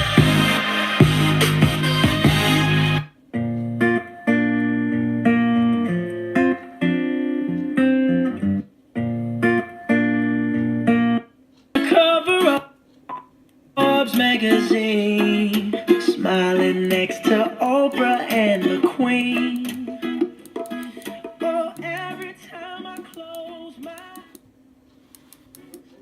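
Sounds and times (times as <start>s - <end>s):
person singing: 0.0s - 2.8s, 11.8s - 12.8s, 13.8s - 24.4s
pop song over speaker: 0.0s - 3.0s, 11.8s - 13.2s, 13.8s - 24.5s
strummed guitar chords: 0.0s - 12.7s, 13.8s - 24.4s.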